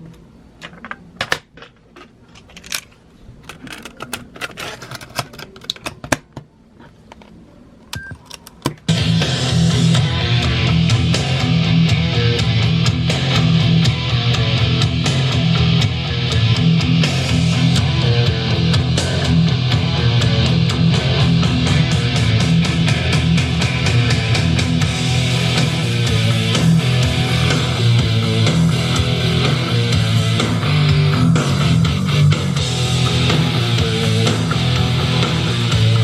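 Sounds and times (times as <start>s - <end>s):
guitar rock music: 8.9s - 36.0s.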